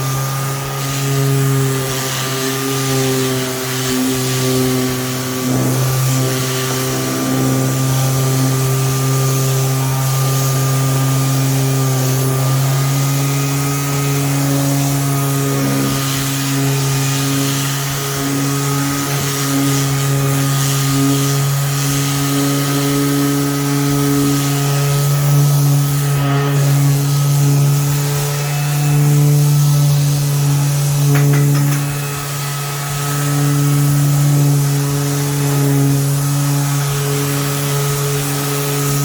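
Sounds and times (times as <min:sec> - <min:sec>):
orbital sander on wood: 0:00.0 - 0:39.0.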